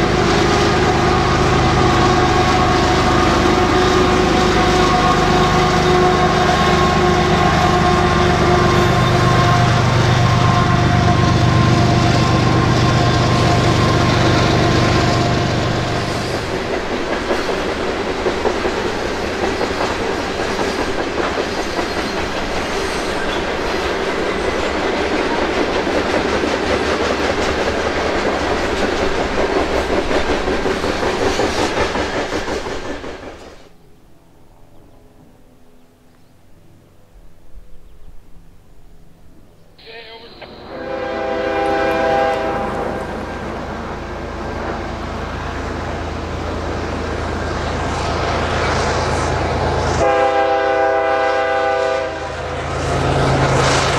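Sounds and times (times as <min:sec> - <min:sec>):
locomotive engines running hard: 0:00.0 - 0:33.3
rail car wheels clattering: 0:00.0 - 0:33.8, 0:40.3 - 0:53.9.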